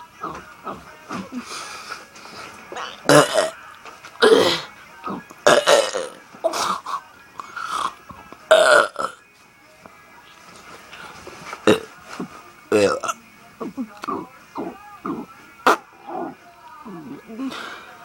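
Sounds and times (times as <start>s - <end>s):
man belching: 0.2s - 1.4s, 2.7s - 3.6s, 4.2s - 7.0s, 7.6s - 9.2s, 11.6s - 11.9s, 12.7s - 17.4s.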